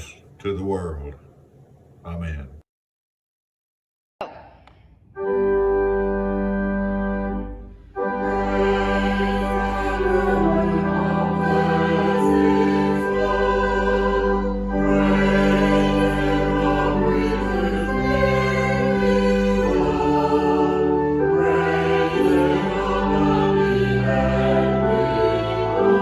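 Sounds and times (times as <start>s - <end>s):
choir singing sustained chords: 5.2s - 26.0s
long held bass notes: 5.2s - 26.0s.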